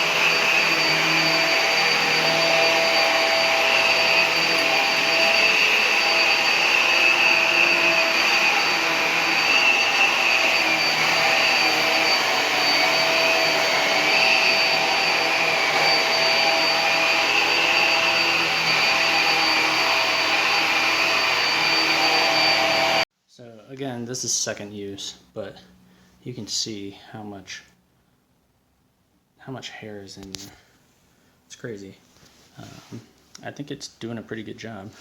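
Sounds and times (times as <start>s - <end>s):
vacuum cleaner on carpet: 0.0s - 23.0s.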